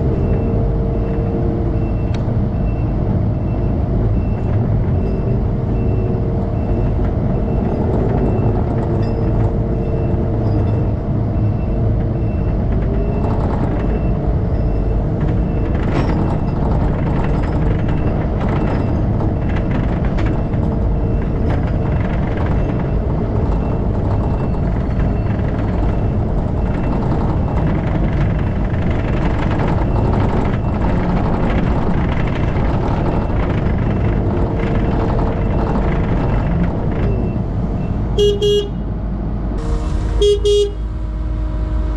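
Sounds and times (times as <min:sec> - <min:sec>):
diesel engine under load: 0:00.0 - 0:41.9
backup alarm beeping: 0:37.1 - 0:38.8, 0:39.6 - 0:41.9.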